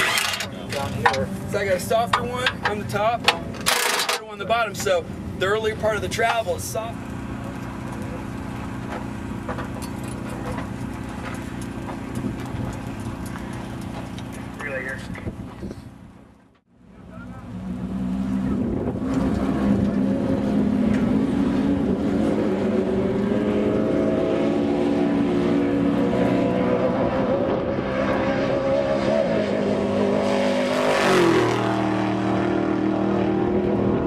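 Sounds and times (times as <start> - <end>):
race truck engine passing by: 17.2 - 34.0.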